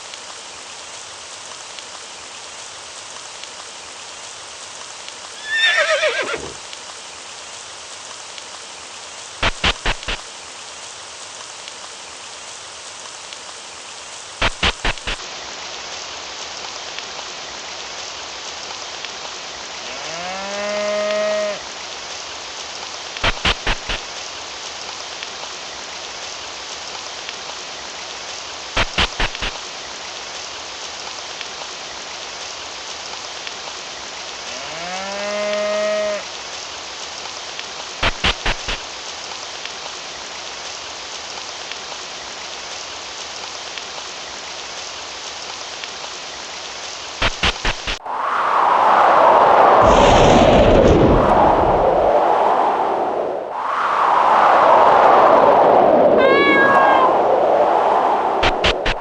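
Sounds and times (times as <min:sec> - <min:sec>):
steady rain falling: 0:00.0 - 0:59.0
cow mooing: 0:19.9 - 0:21.6, 0:34.6 - 0:36.2.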